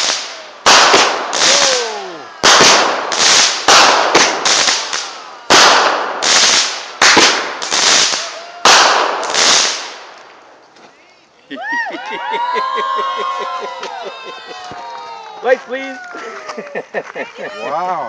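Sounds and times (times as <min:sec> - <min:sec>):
firework bangs with crackling: 0:00.0 - 0:10.4.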